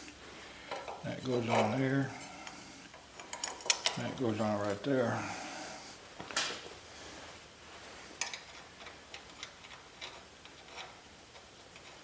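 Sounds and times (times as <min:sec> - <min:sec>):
metal brake parts clicking: 0:02.9 - 0:04.0.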